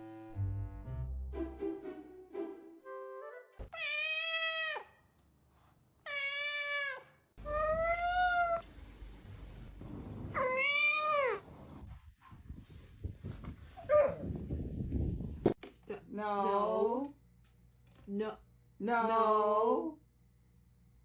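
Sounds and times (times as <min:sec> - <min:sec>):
cat meowing: 0:03.7 - 0:05.0, 0:06.0 - 0:08.6, 0:10.4 - 0:11.4.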